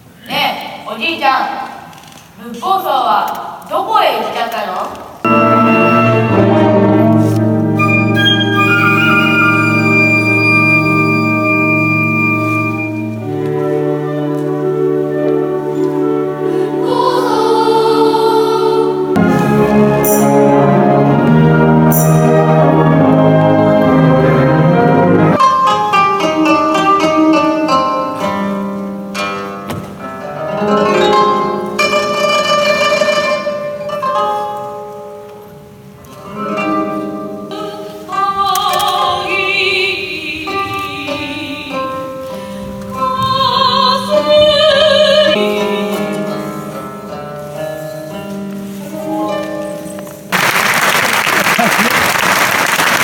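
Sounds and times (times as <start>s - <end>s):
plucked strings melody: 5.3s - 37.9s.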